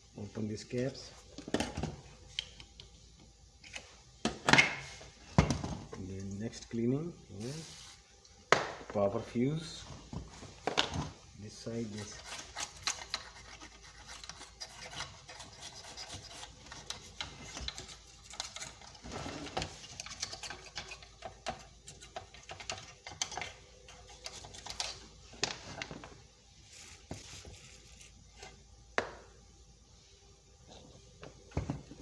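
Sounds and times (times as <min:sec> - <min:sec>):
tools scratching circuit board: 0:11.9 - 0:19.0.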